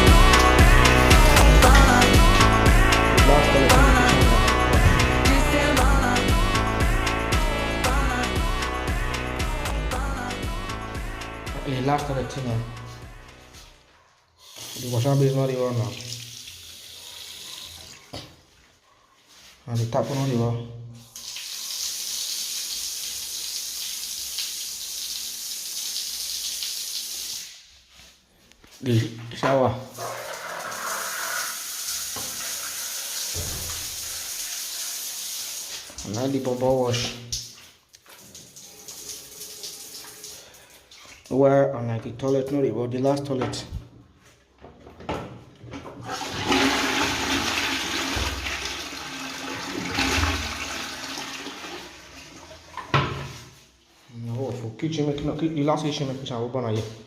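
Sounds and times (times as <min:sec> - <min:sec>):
water running from tap: 0:14.4 - 0:18.3, 0:21.1 - 0:27.6, 0:29.9 - 0:41.3, 0:46.0 - 0:53.3
rush of flushing water: 0:29.9 - 0:36.6, 0:46.0 - 0:53.3
toilet flush clicks: 0:45.9 - 0:51.9.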